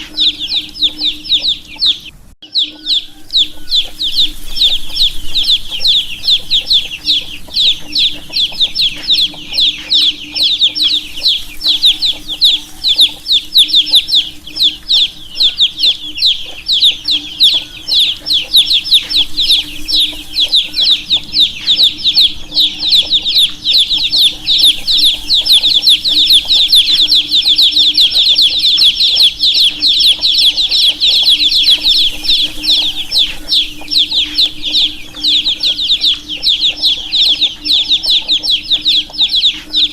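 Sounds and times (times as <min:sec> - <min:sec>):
baby chicks peeping: 0:00.0 - 0:39.9
steady low hum: 0:00.0 - 0:39.9.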